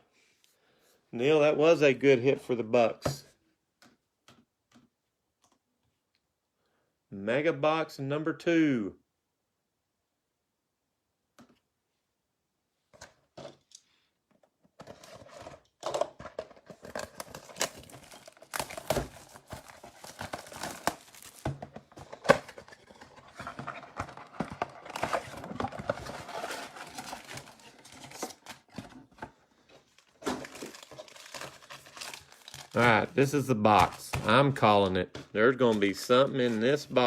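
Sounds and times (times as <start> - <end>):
plastic wrapping crinkling: 16.4 - 29.0, 29.9 - 34.4.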